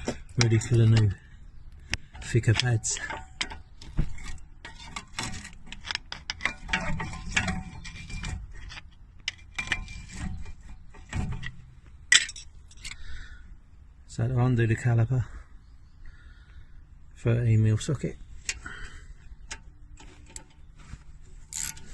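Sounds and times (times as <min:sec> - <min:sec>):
metallic clicks of hand tools: 0:21.5 - 0:21.8.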